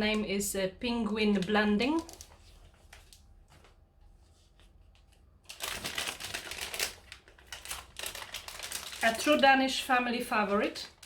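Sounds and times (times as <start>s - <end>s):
plastic packet crinkling: 1.2s - 3.2s, 5.4s - 11.0s.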